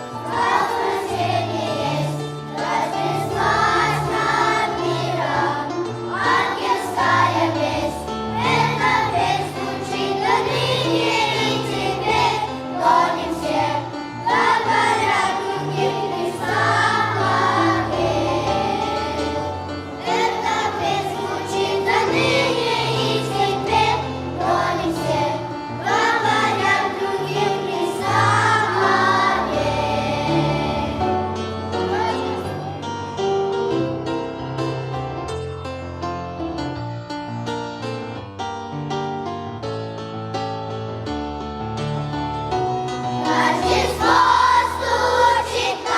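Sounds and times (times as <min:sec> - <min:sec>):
children's choir singing: 0:00.0 - 0:33.7, 0:43.0 - 0:45.9
instrumental accompaniment: 0:00.0 - 0:45.9.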